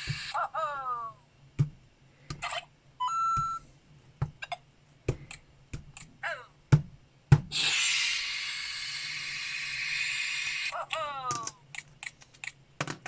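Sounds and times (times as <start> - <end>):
electronic toy beeps and chirps: 3.0 - 3.7.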